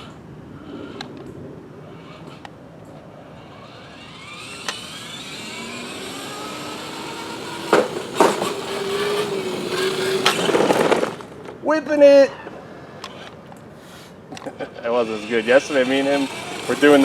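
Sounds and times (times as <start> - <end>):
electric toy car motor whining: 0.0 - 1.2, 1.8 - 11.4, 14.7 - 17.0
wheels scraping in a drift: 0.0 - 1.2, 1.8 - 11.6, 12.3 - 17.0.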